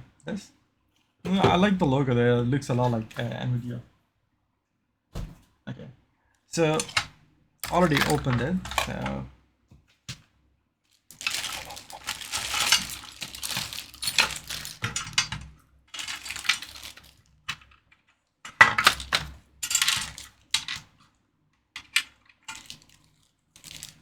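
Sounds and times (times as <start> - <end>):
packaging rustling: 7.6 - 9.2, 10.9 - 17.8, 18.8 - 20.8, 22.0 - 24.0.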